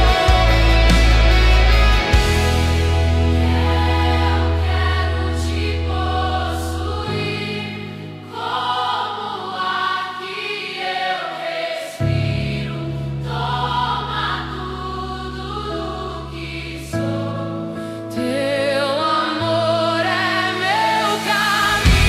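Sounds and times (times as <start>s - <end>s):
low bass: 0.0s - 5.9s, 21.8s - 22.0s
choir singing gospel music: 0.0s - 22.0s.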